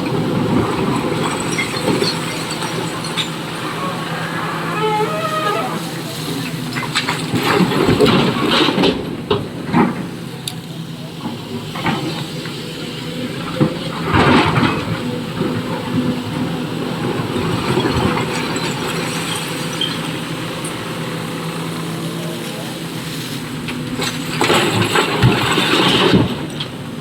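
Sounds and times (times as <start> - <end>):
excavator diesel engine: 0.0 - 27.0.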